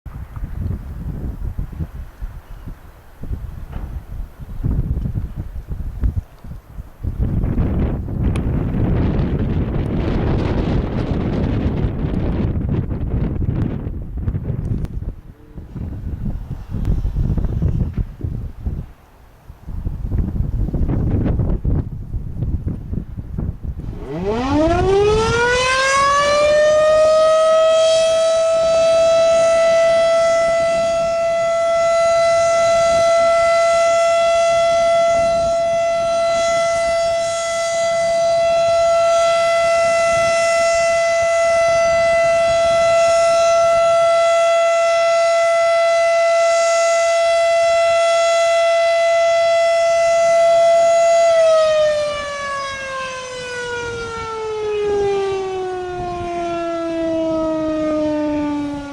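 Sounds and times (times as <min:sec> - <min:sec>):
siren winding up and down: 0:23.8 - 0:58.9.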